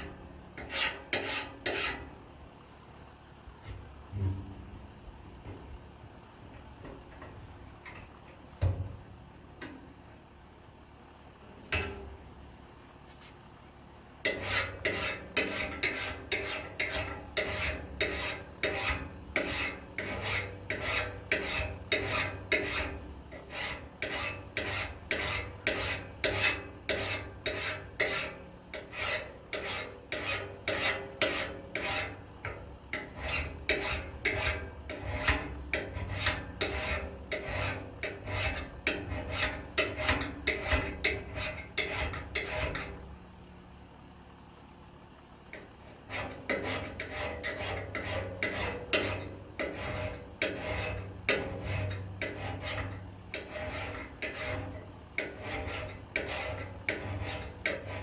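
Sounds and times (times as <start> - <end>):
steel file rasping on blade: 0.6 - 2.1, 14.2 - 43.0, 45.6 - 58.0.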